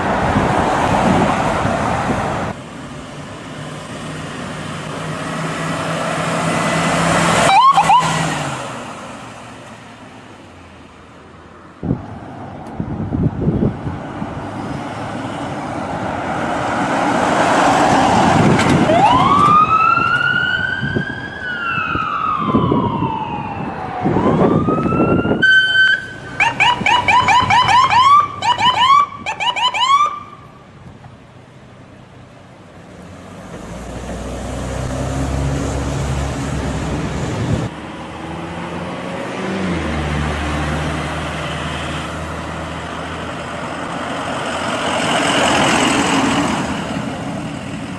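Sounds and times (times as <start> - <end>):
traffic: 0.0 - 47.9
ambulance siren wailing and yelping: 7.4 - 8.2, 18.7 - 30.4.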